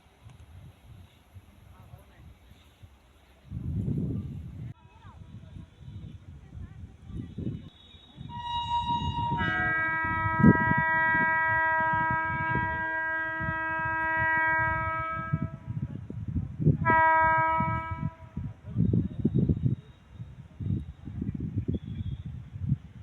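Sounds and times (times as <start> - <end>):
train rumbling on rails: 0.0 - 23.0
locomotive horn blast: 7.8 - 15.8, 16.8 - 18.4.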